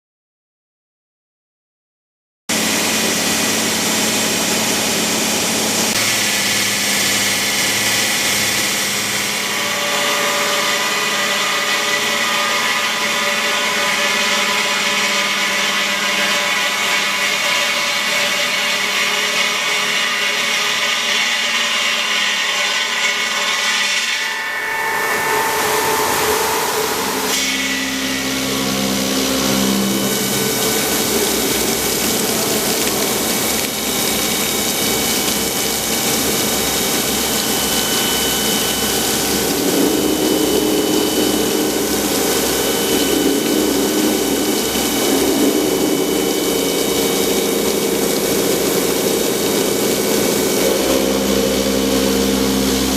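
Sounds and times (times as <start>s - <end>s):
stone-cutting machine running: 2.5s - 52.9s.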